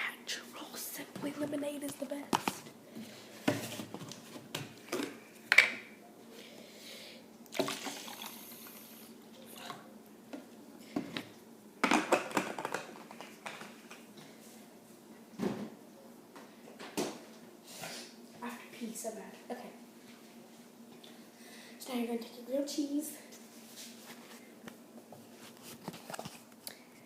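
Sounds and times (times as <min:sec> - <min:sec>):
liquid pouring into cup: 0:07.5 - 0:08.9.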